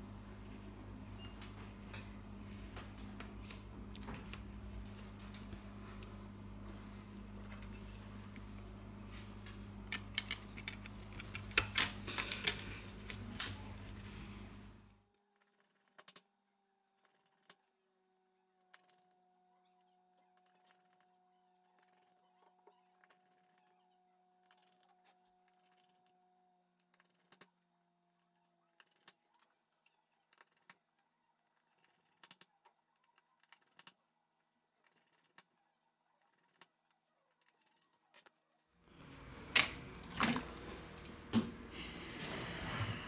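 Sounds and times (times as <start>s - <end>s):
faint steady hum: 0.0s - 15.1s, 38.8s - 43.0s
small parts clicking and tapping: 9.8s - 13.9s, 31.5s - 34.0s.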